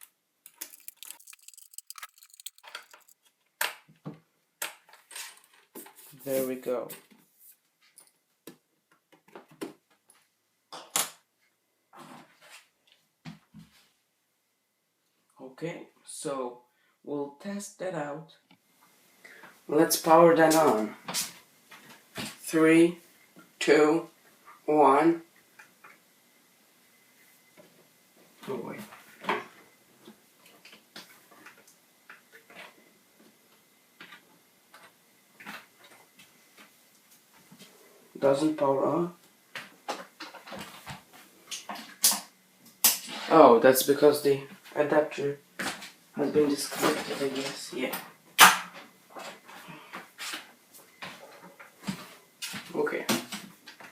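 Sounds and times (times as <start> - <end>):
plastic and metal parts clicking: 0.5 - 3.2.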